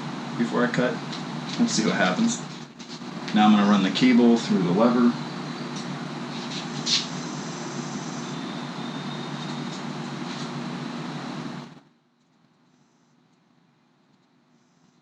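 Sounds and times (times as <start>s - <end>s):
low hum: 0.0s - 11.8s.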